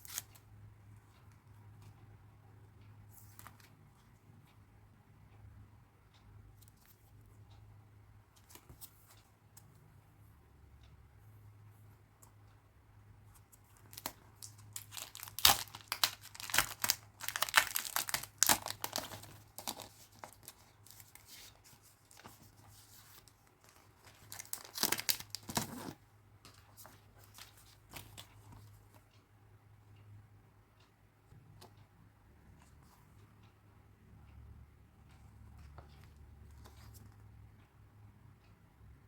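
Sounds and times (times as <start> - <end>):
packaging tearing and crinkling: 14.5 - 20.3, 24.3 - 25.9.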